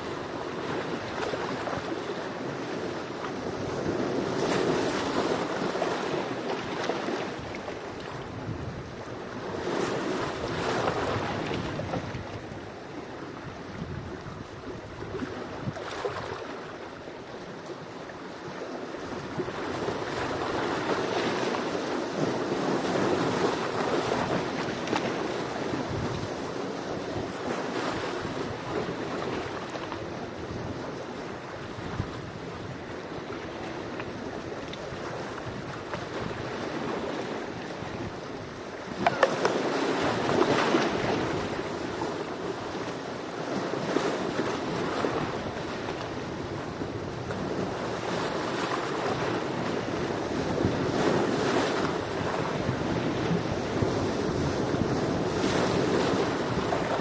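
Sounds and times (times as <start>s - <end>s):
sea waves washing in: 18.3s - 57.0s
wave breaking: 38.8s - 42.2s.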